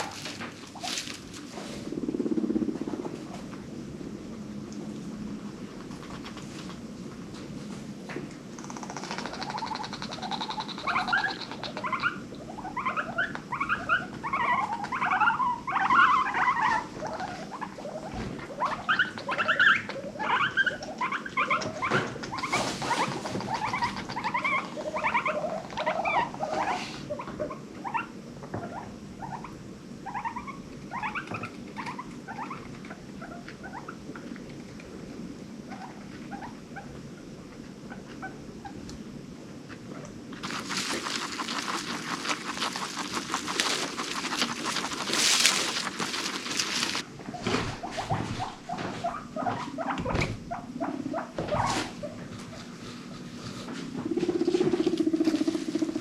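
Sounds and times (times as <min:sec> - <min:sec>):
guinea pigs squeaking: 0:00.0 - 0:02.7, 0:08.6 - 0:34.3, 0:35.7 - 0:36.9, 0:40.4 - 0:52.8, 0:53.4 - 0:56.0.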